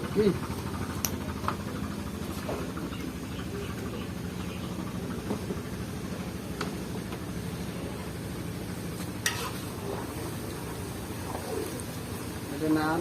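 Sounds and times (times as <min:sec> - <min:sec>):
low engine hum: 0:00.0 - 0:12.6.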